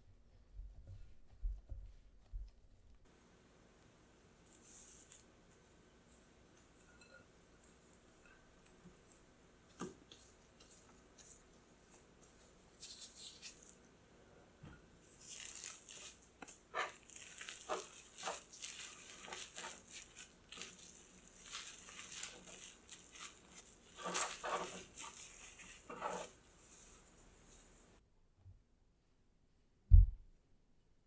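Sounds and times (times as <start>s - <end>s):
scraping and rustling strokes: 4.4s - 13.8s, 15.0s - 28.0s.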